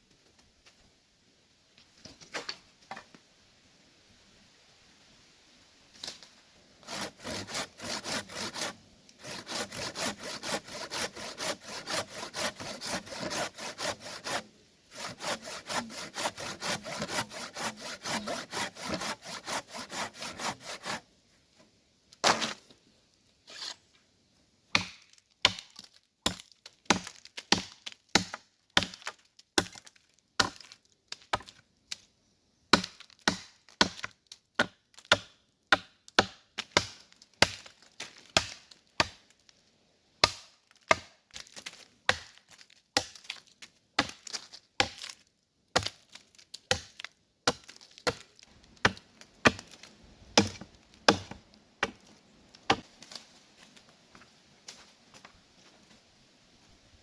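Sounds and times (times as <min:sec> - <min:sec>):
hand saw cutting wood: 0:06.8 - 0:21.1, 0:50.4 - 0:52.0.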